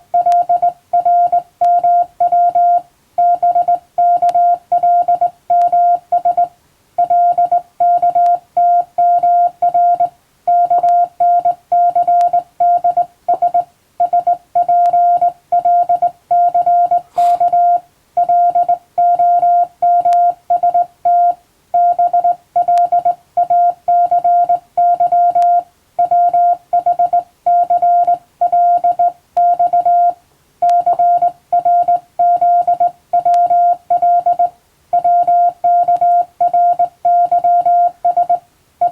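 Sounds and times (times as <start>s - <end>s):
morse code beeps: 0.1s - 38.9s.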